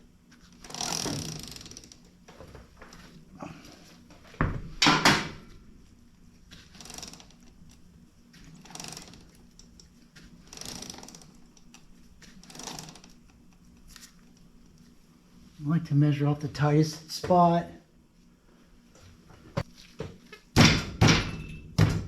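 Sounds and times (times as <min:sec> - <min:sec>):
drive chain running over sprockets: 0:00.6 - 0:02.0, 0:06.7 - 0:07.5, 0:08.6 - 0:09.7, 0:10.4 - 0:11.4, 0:12.4 - 0:13.2.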